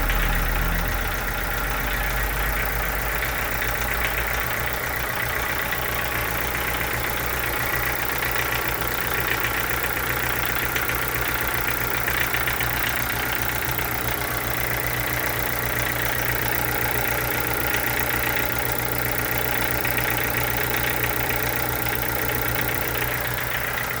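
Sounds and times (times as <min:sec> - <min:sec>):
car engine idling: 0:00.0 - 0:24.0
fast even engine ticking: 0:00.0 - 0:24.0.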